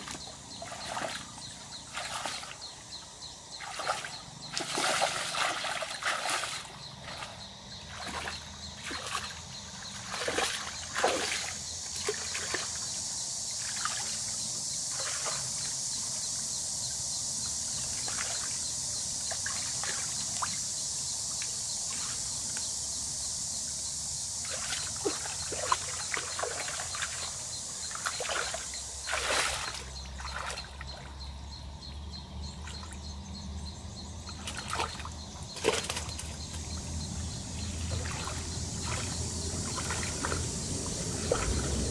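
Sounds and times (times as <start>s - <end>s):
small water splashes: 0.0s - 13.0s, 13.6s - 15.7s, 17.8s - 18.6s, 19.2s - 20.6s, 24.4s - 31.2s, 34.2s - 41.9s
water sloshing and trickling: 0.0s - 15.8s, 17.6s - 22.7s, 24.3s - 41.9s.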